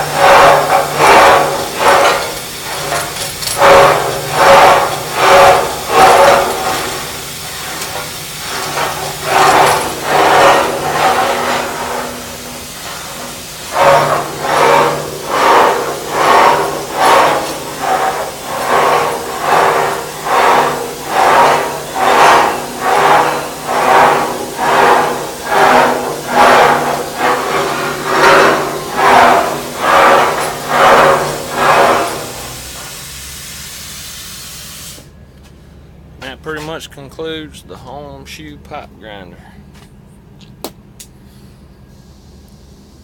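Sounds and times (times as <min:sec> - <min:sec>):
motor hum: 0:00.0 - 0:32.9
pipe reamer rasping strokes: 0:00.0 - 0:33.1.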